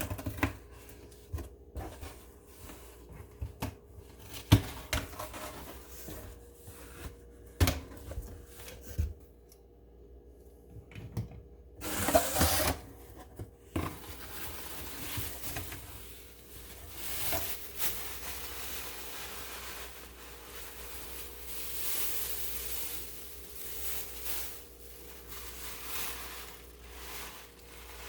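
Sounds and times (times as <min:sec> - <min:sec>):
packaging rustling: 0:13.9 - 0:28.0.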